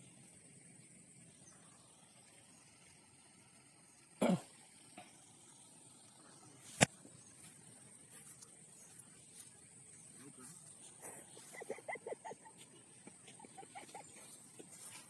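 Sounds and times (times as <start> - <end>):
person coughing: 4.2 - 4.5.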